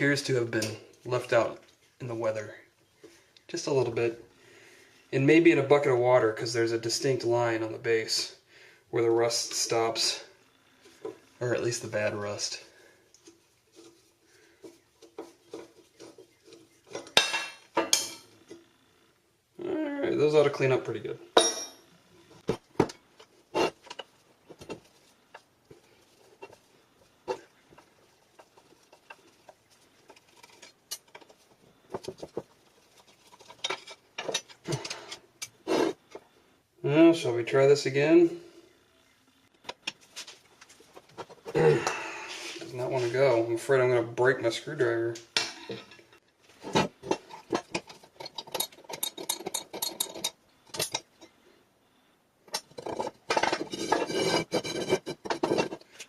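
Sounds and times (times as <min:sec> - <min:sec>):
hand tools clicking and scraping: 0:10.8 - 0:18.7, 0:22.4 - 0:36.3, 0:39.6 - 0:43.2, 0:45.4 - 0:51.4, 0:52.4 - 0:56.0
hand tools clinking on metal vise: 0:21.4 - 0:21.9, 0:33.4 - 0:35.6, 0:47.0 - 0:51.3.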